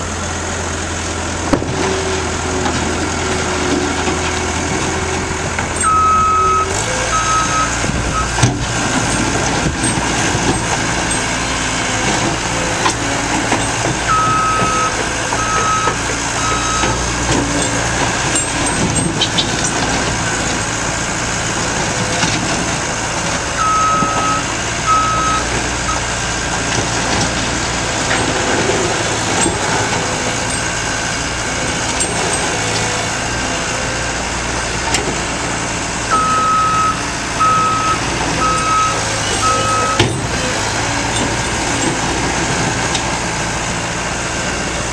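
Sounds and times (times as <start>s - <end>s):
diesel engine running: 0.0s - 44.9s
backup alarm beeping: 5.8s - 8.3s, 36.1s - 40.0s.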